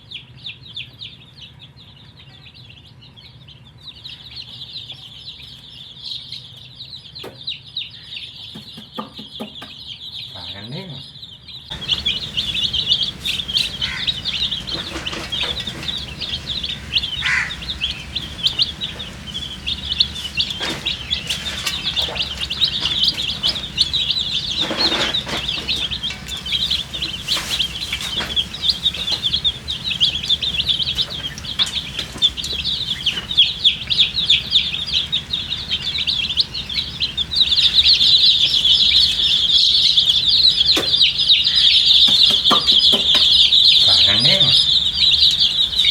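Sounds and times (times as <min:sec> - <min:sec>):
baby chicks peeping: 0:00.0 - 0:45.9
knocks: 0:08.6 - 0:09.8.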